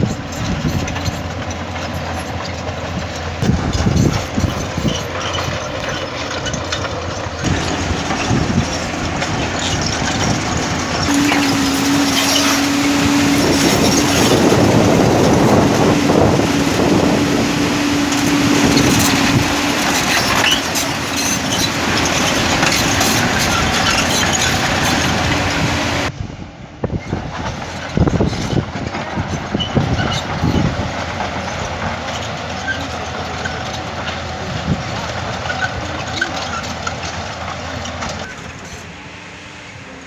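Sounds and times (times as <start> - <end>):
knocks and clanks: 0.0 - 26.1
heavy construction machinery: 0.0 - 40.0.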